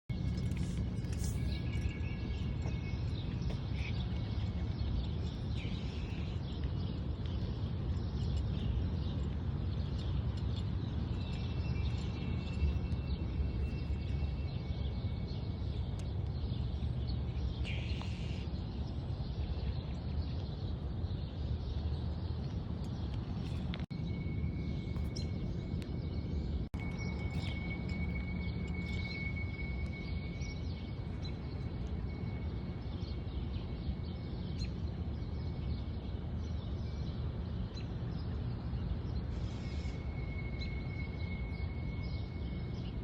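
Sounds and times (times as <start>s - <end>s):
steady low drone: 0.1s - 43.0s.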